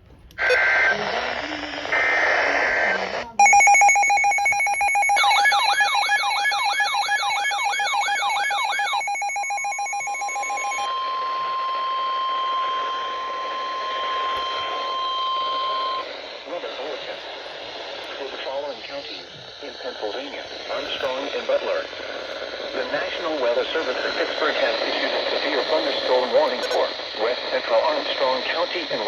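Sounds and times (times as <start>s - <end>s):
warbling buzzing alarm: 0.4s - 17.7s
steady single-pitch alarm tone: 3.4s - 16.5s.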